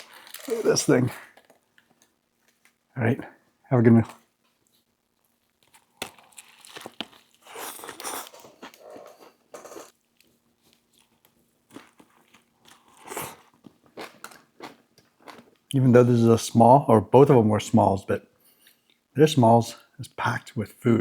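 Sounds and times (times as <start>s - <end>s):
sandwich chewing and crunching: 0.0s - 2.9s, 4.6s - 15.8s.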